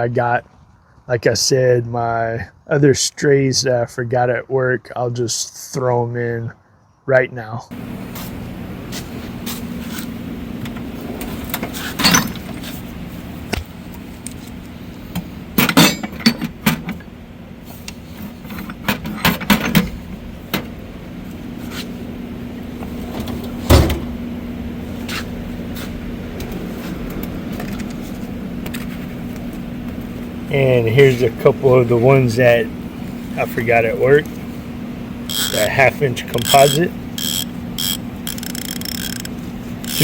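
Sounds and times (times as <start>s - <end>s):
steady low hum: 7.7s - 40.0s
metal tools clanking: 11.6s - 12.8s, 15.6s - 17.0s.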